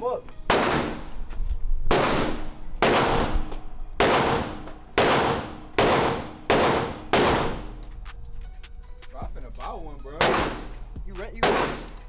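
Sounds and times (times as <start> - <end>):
pistol shots with ringing tail: 0.5 - 1.3, 1.9 - 7.9, 10.2 - 12.0.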